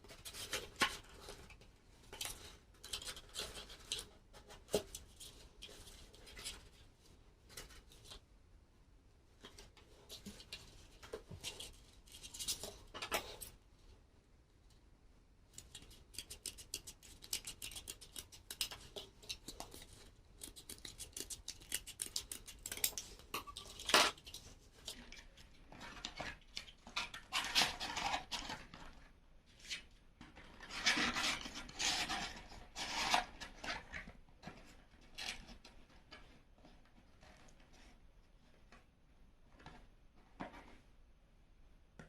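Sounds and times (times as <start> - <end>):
scissors cutting cardboard: 15.7 - 23.2.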